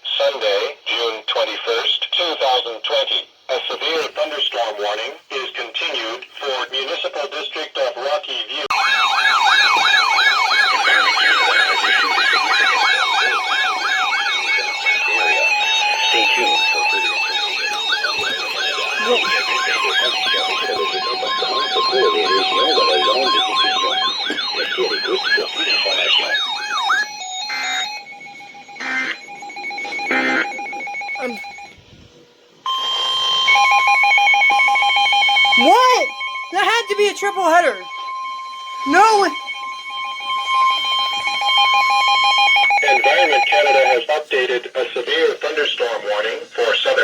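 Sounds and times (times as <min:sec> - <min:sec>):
siren-like alert tone: 0:08.7 - 0:31.8, 0:32.7 - 0:43.4
fast-pulsing electronic beep: 0:11.0 - 0:31.7
steady alert tone: 0:35.4 - 0:40.2.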